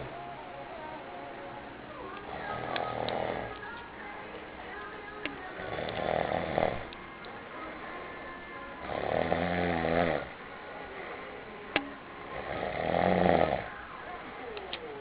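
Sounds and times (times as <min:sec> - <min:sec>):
man snoring: 0:02.3 - 0:03.5, 0:05.7 - 0:06.9, 0:08.8 - 0:10.4, 0:12.3 - 0:13.7.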